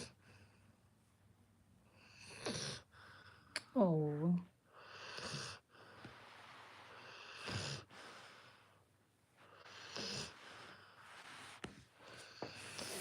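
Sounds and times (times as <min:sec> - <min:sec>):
puppy snoring: 0:01.9 - 0:03.5, 0:04.7 - 0:06.0, 0:06.8 - 0:08.7, 0:09.4 - 0:13.0.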